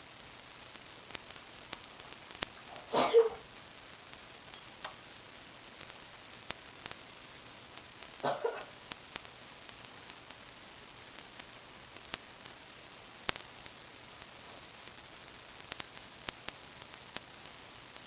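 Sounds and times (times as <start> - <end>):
microphone hiss: 0.0 - 18.0
small sharp clicks: 0.7 - 2.8, 4.1 - 5.1, 8.8 - 10.5, 11.2 - 12.6, 13.2 - 18.0.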